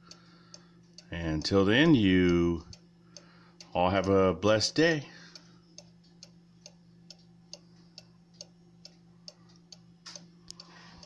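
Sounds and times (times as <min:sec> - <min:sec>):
cuckoo clock ticking: 0:00.0 - 0:04.2.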